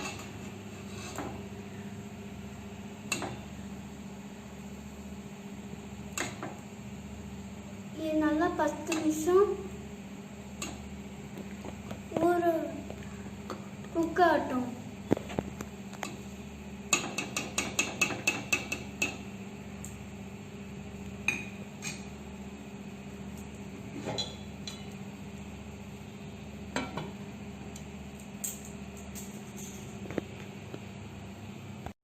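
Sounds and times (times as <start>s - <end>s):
steady low hum: 0.0s - 32.0s
metal cookware clinking: 24.0s - 25.0s.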